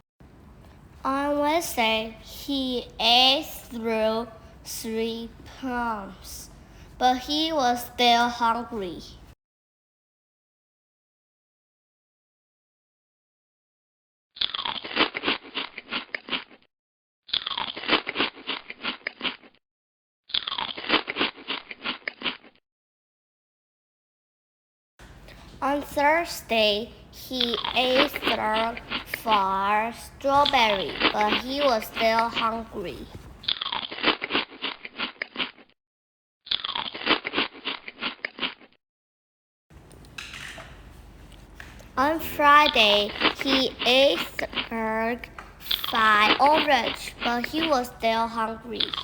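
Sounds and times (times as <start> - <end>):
crunchy biting and chewing: 14.4 - 16.7, 17.3 - 19.6, 20.3 - 22.6, 27.4 - 29.4, 30.4 - 35.7, 36.5 - 38.8, 41.4 - 47.8, 48.8 - 49.0.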